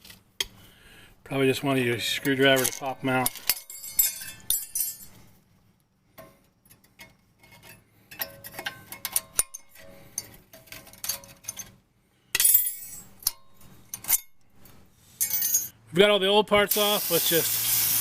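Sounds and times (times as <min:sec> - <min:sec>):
metal clinks and clicks: 0:02.2 - 0:05.2
harsh scraping hiss: 0:16.7 - 0:18.0.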